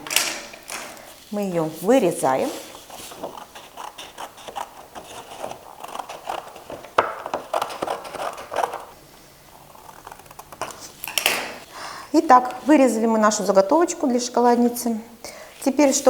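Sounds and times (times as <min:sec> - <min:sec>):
card rustling: 0:01.8 - 0:09.0
scissors snipping cardboard: 0:03.3 - 0:08.9.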